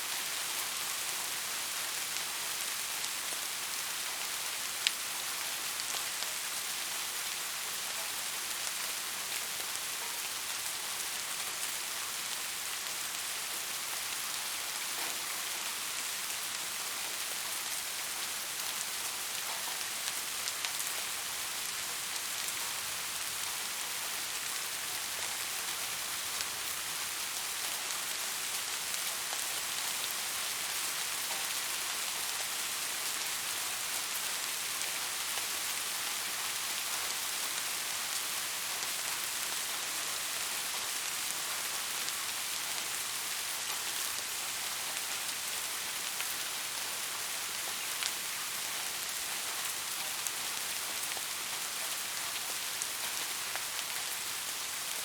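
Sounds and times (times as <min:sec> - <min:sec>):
rain on hard surfaces: 0:00.0 - 0:55.0.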